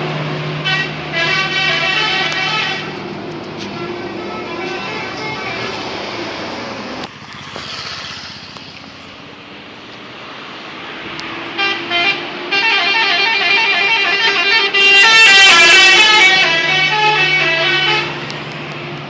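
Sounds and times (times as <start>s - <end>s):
vehicle engine noise: 0.0s - 19.0s
musical bus horn tune: 0.5s - 6.1s, 11.5s - 18.6s.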